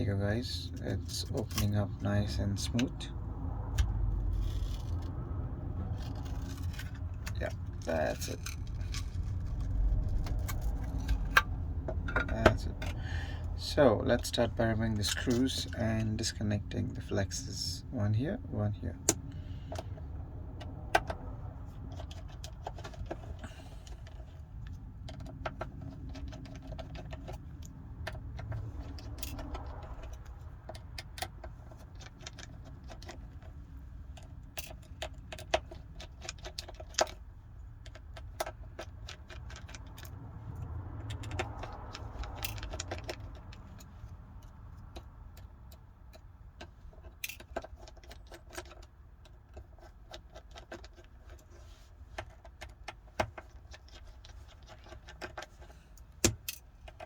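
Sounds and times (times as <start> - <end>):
low steady hum: 0.0 - 57.0.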